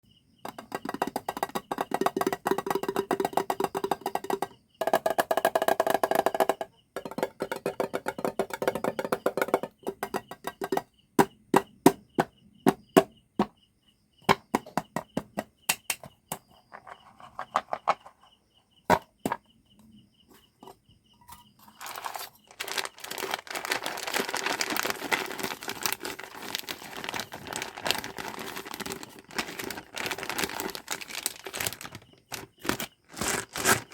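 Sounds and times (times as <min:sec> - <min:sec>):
candy packaging crackling: 0:21.6 - 0:33.9
plastic crinkling: 0:21.6 - 0:33.9.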